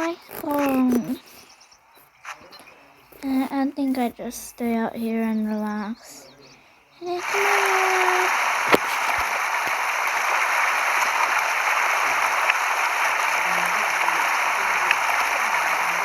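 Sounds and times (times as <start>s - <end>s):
rushing splashing water: 7.1s - 16.0s.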